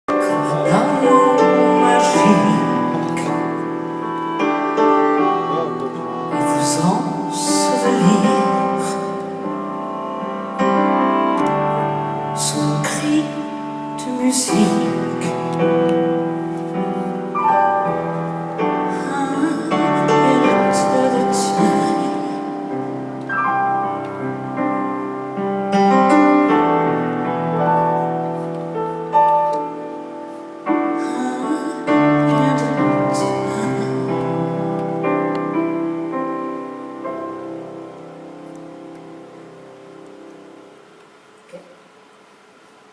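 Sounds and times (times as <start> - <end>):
piano playing slow song: 0.1 - 42.9
woman singing: 0.2 - 3.5, 6.4 - 9.2, 12.4 - 15.5, 18.8 - 22.7, 30.9 - 34.6.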